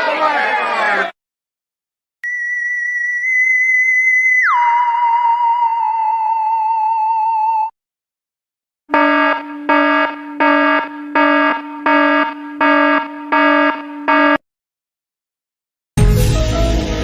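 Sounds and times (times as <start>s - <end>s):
electronic alarm buzzer pulses: 8.9s - 14.4s.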